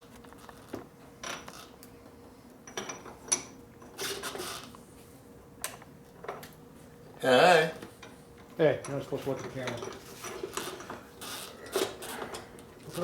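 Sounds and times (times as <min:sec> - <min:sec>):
metal tools clinking and clattering: 0:08.8 - 0:11.0.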